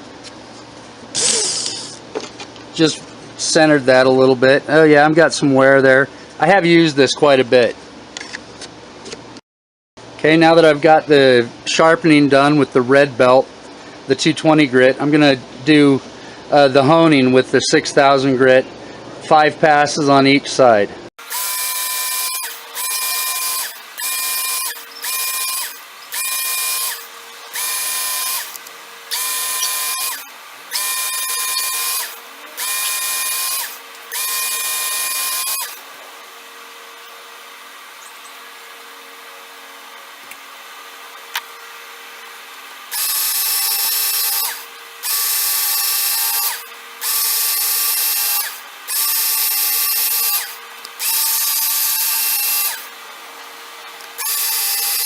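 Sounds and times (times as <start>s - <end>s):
sharpener motor running: 21.2s - 40.3s, 42.9s - 52.9s, 54.1s - 55.0s.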